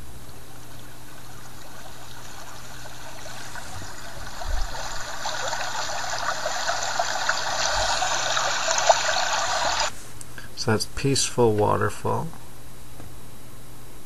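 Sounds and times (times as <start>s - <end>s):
waterfall through tablet speaker: 0.8s - 9.9s.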